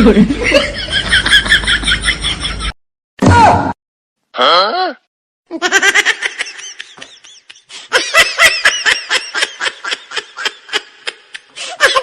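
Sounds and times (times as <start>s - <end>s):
high-pitched laughter: 5.5s - 12.0s.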